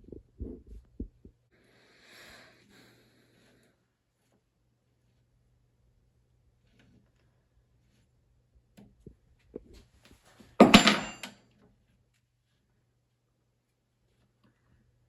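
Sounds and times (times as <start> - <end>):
metal tools clattering: 10.6 - 11.3.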